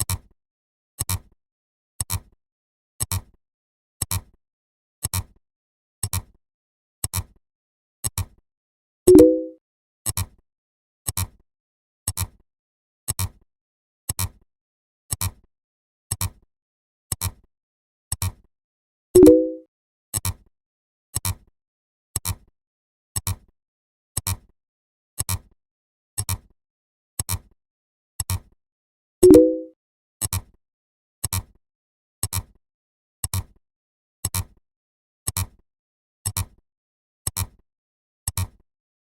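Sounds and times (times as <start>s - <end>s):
pitched blip: 9.1s - 9.6s, 19.2s - 19.6s, 29.2s - 29.7s.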